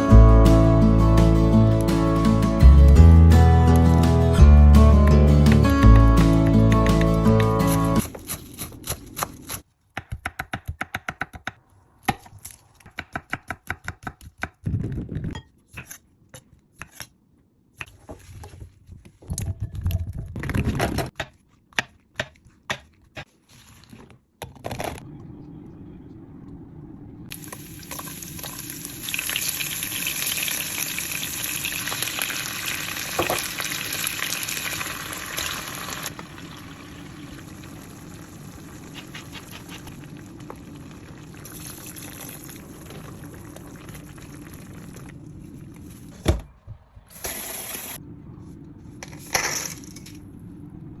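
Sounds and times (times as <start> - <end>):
cooking hiss: 27.3 - 45.1.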